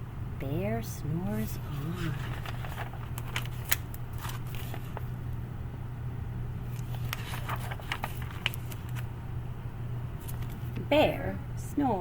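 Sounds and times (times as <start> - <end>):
steady low hum: 0.0 - 12.0
book pages turning: 1.6 - 5.2, 6.7 - 9.1, 10.2 - 10.8.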